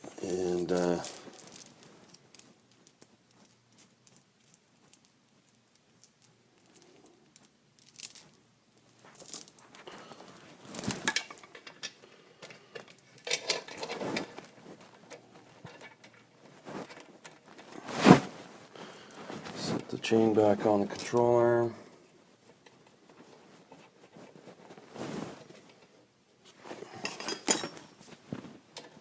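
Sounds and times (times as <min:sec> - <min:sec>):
metal chain clinking: 0:00.3 - 0:08.4, 0:09.0 - 0:11.8, 0:13.1 - 0:14.6, 0:26.9 - 0:28.0
tools clattering: 0:00.4 - 0:04.3, 0:09.1 - 0:12.0, 0:12.8 - 0:17.8, 0:26.9 - 0:28.1.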